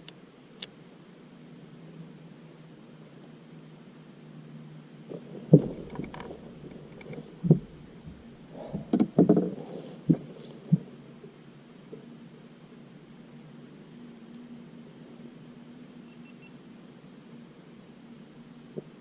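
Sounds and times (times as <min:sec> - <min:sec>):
scraping: 0:05.1 - 0:10.8
knocks and thumps on a boat: 0:05.1 - 0:10.9.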